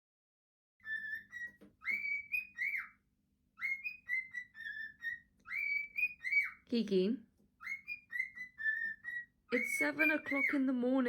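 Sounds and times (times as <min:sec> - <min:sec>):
bird whistling a tune: 0:00.8 - 0:03.0, 0:03.6 - 0:06.6, 0:07.6 - 0:10.8.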